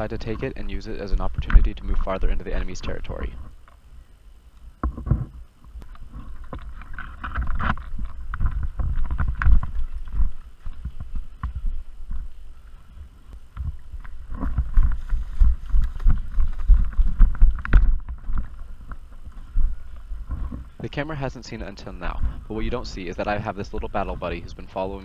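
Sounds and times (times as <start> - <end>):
wind buffeting microphone: 0.0 - 4.1, 4.7 - 25.0
footsteps: 4.8 - 24.4
clothing and gear rustling: 5.1 - 20.8.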